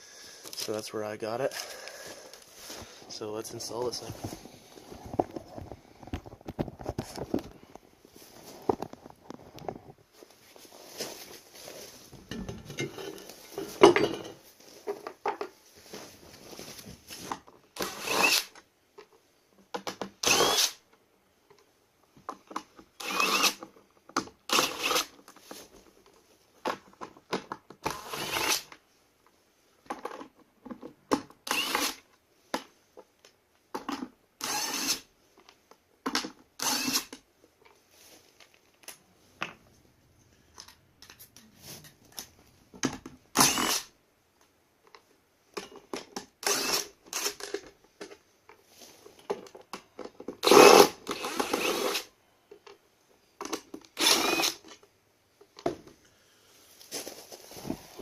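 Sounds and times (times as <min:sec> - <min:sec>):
power drill bursts: 0:17.8 - 0:18.5, 0:20.2 - 0:20.8, 0:23.0 - 0:23.6, 0:24.5 - 0:25.1, 0:27.9 - 0:28.6, 0:31.4 - 0:32.0, 0:34.4 - 0:35.0, 0:36.6 - 0:37.1, 0:43.4 - 0:43.9, 0:46.4 - 0:47.4, 0:50.4 - 0:52.1, 0:54.0 - 0:54.6.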